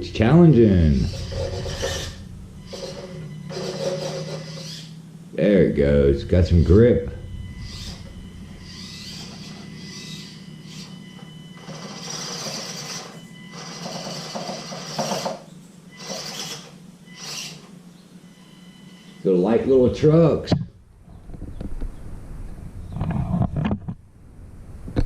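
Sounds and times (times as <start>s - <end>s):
small electric motor whining: 0.0s - 5.6s, 7.2s - 19.2s.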